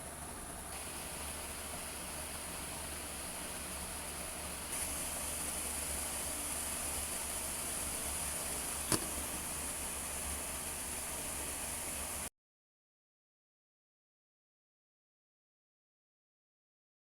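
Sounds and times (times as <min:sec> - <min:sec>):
steady background hiss: 0:00.0 - 0:12.3
sharp click: 0:08.9 - 0:09.2.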